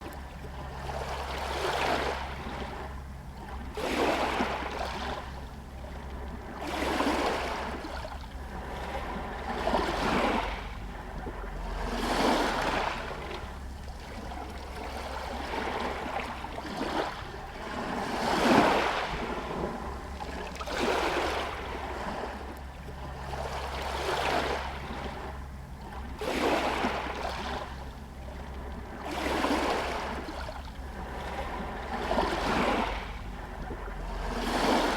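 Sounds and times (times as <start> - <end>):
waves lapping against stones: 0.0 - 34.9
low rumble: 7.4 - 34.9.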